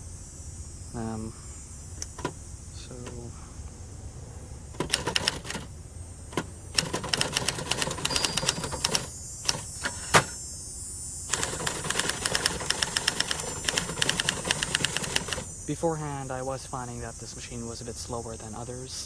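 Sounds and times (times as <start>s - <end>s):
typewriter keys clicking: 4.8s - 5.7s, 6.3s - 10.4s, 11.3s - 15.5s.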